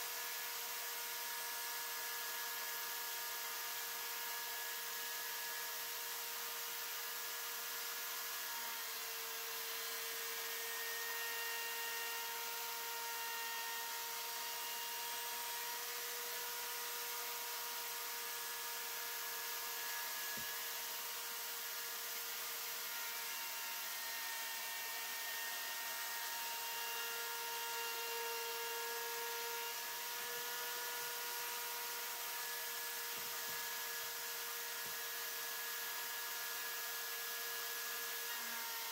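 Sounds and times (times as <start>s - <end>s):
router whining while cutting wood: 0.0s - 38.9s.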